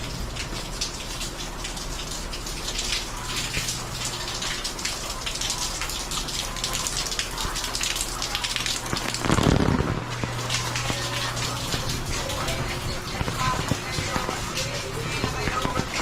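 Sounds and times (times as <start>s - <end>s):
heavy rain falling: 0.0s - 16.0s.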